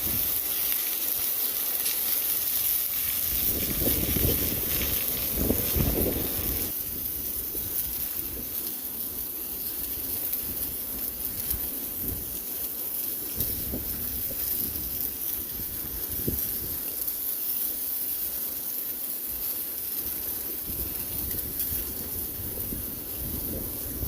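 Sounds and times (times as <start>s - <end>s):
wind rumbling on microphone: 0.0s - 0.6s, 2.3s - 8.7s, 9.6s - 12.4s, 13.2s - 17.0s, 20.0s - 24.0s
hiss of falling rain: 0.0s - 24.0s.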